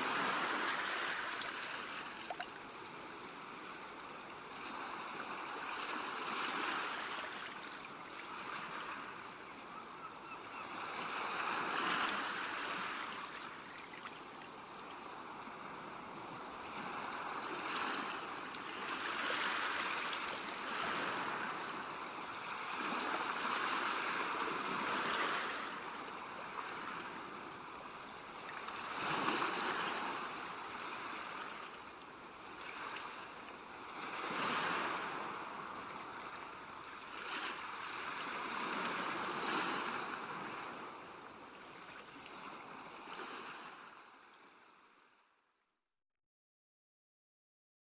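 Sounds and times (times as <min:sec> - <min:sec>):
ocean waves breaking: 0:16.7 - 0:21.9.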